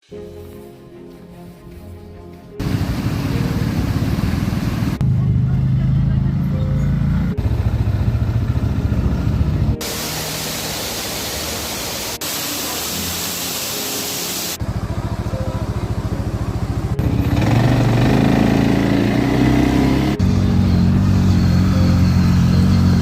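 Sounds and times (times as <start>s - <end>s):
off-road vehicle engine running: 2.6s - 11.6s, 14.6s - 23.0s
steady hiss: 9.8s - 14.6s.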